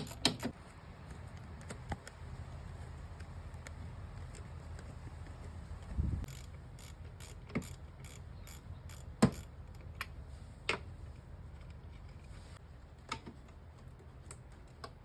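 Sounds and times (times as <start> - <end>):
metallic clicks and knocks of tools: 0.0 - 0.5.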